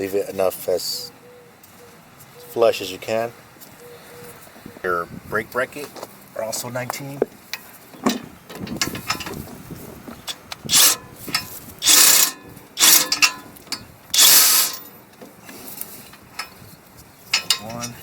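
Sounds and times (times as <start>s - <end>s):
hand ratchet clicking: 10.7s - 13.4s, 14.2s - 14.8s.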